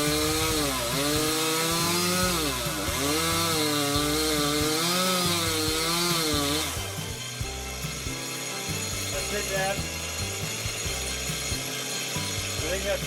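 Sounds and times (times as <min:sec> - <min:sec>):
chainsaw cutting wood: 0:00.0 - 0:13.0.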